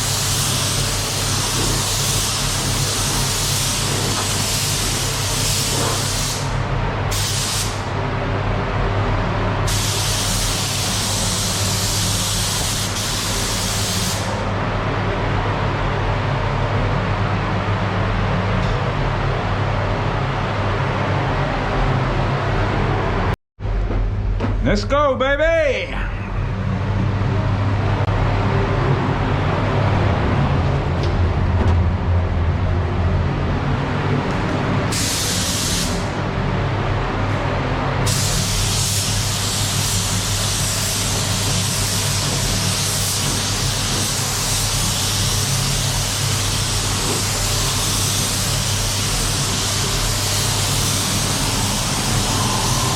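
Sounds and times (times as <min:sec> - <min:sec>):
mechanical roar with hum: 0:00.0 - 0:09.7, 0:13.1 - 0:24.8, 0:25.9 - 0:38.2, 0:40.3 - 0:52.9
steady low hum: 0:14.2 - 0:38.0
paint spray gun hissing: 0:34.9 - 0:36.0, 0:38.1 - 0:52.3.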